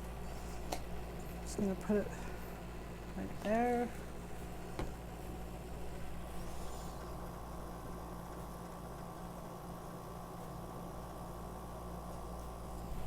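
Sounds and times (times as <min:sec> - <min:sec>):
air compressor humming: 0:00.0 - 0:09.6.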